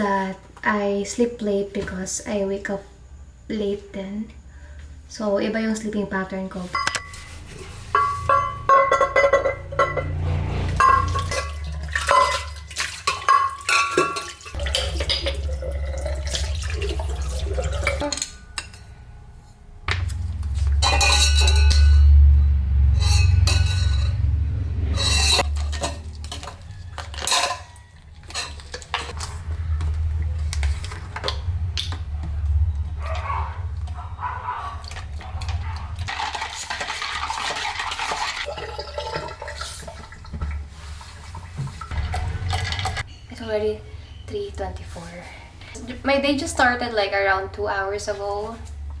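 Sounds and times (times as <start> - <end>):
cups and glassware clinking: 6.8 - 10.2, 10.8 - 19.0, 20.0 - 22.1, 25.0 - 29.2
liquid being poured: 10.8 - 18.1, 36.0 - 43.0
steady low hum: 14.6 - 26.5, 28.9 - 36.1.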